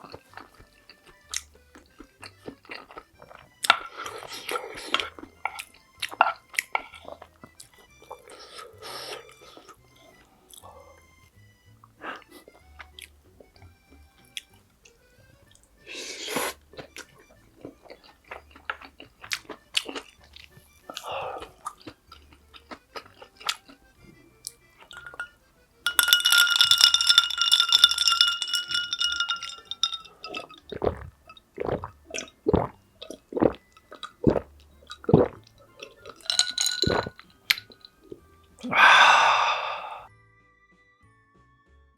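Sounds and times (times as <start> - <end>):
wet chewing and crunching: 0.0 - 11.0, 11.9 - 25.4, 26.8 - 38.6
faint background music: 0.0 - 41.9
spoon or chopsticks clicking: 25.9 - 30.6, 36.1 - 37.8.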